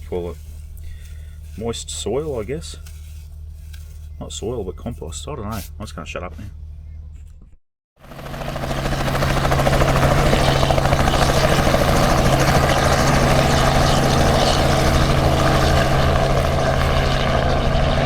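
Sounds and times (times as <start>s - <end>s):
engine drone: 8.0s - 18.0s.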